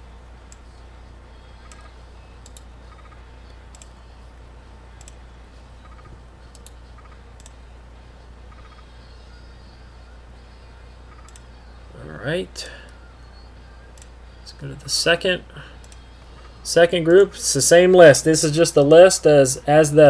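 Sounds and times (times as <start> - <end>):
low electrical hum: 0.0 - 20.0
computer mouse clicks: 1.6 - 3.9, 5.0 - 5.2, 5.8 - 7.6, 11.1 - 11.4.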